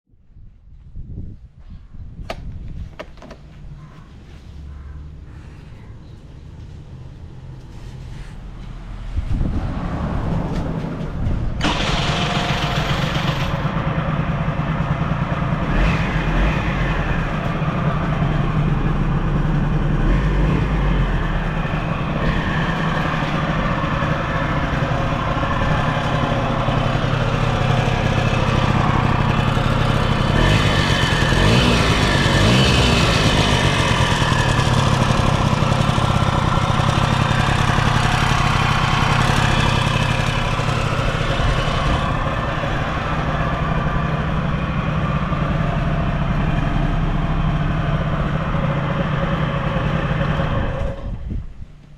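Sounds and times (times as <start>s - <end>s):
scooter engine idling: 11.4s - 51.9s.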